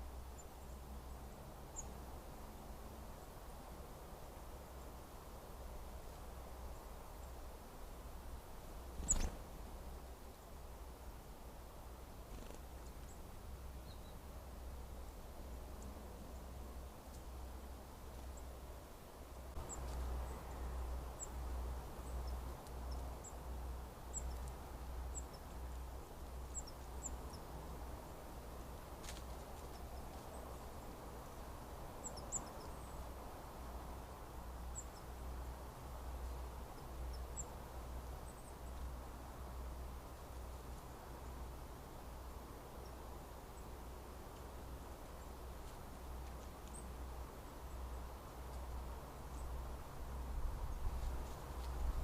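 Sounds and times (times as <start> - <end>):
wind rumbling on microphone: 50.1 - 52.0.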